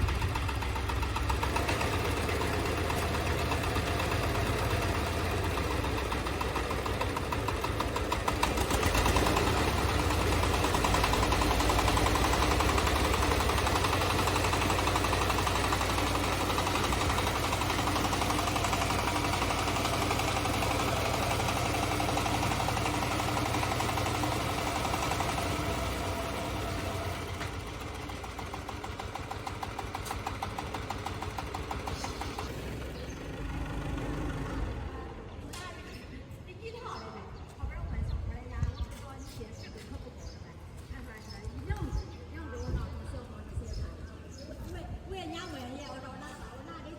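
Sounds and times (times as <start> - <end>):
tractor engine running: 0.0 - 36.4.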